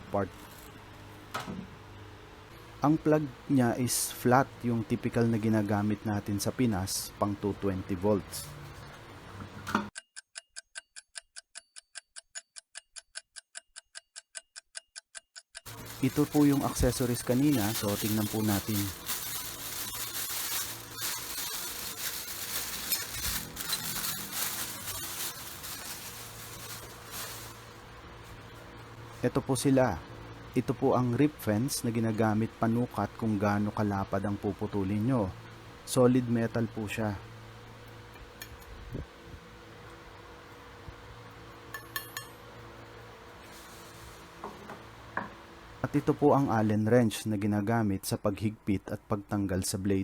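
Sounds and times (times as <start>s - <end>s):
plastic packaging crinkling: 15.7s - 28.6s, 43.4s - 44.5s.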